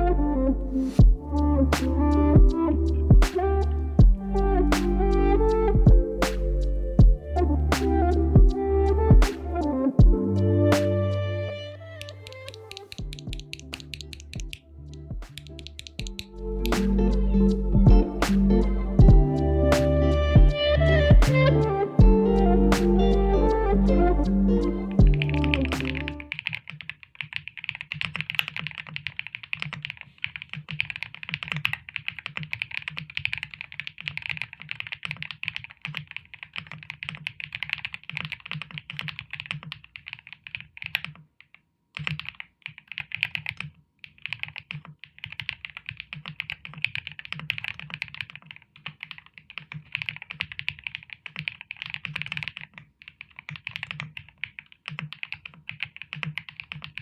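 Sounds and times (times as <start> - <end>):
fast typing on mechanical keyboard: 25.2 - 57.0.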